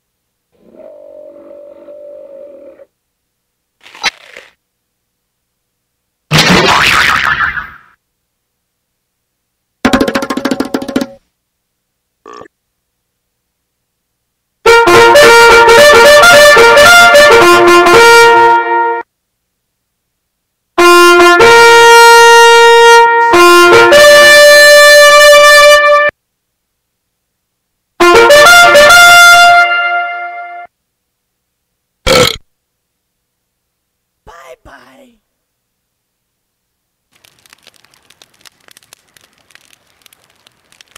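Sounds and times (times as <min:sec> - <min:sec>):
brass sound effect stings: 0:28.0 - 0:30.7.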